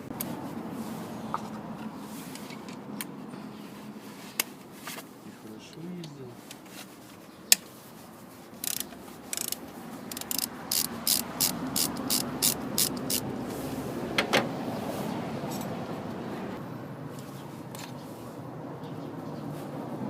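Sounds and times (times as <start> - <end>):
ratchet wrench clicking: 8.6 - 13.2.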